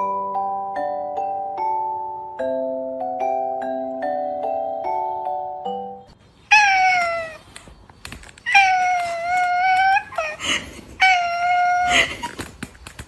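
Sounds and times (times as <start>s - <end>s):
cat yowling long meows: 6.5s - 7.5s, 8.5s - 10.4s, 11.0s - 12.2s.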